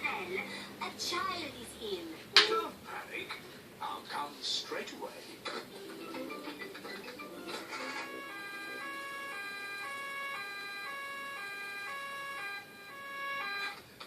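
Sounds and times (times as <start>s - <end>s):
cartoon two-tone siren: 7.6s - 13.8s.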